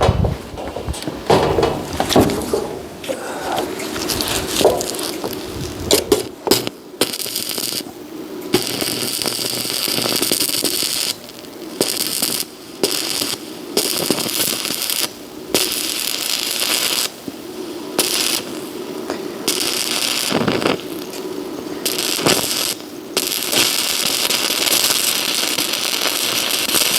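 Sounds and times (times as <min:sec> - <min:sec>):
arc welding crackle: 0:00.0 - 0:26.9.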